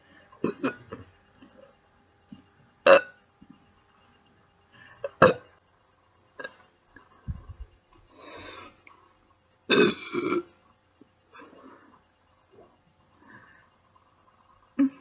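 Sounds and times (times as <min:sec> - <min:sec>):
woman burping: 0:00.4 - 0:01.1, 0:02.9 - 0:03.2, 0:05.0 - 0:05.5, 0:09.7 - 0:10.5, 0:14.8 - 0:15.0.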